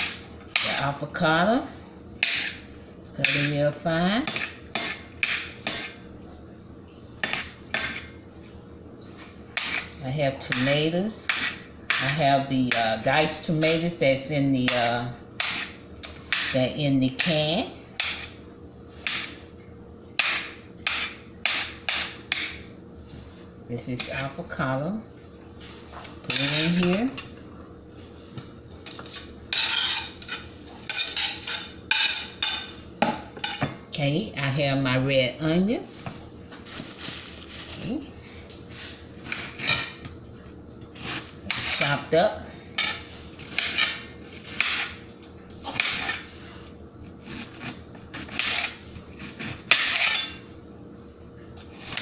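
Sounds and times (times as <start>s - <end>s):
metal utensil scraping a dish: 28.9s - 32.7s, 41.0s - 42.0s
knife chopping onions: 47.2s - 50.4s.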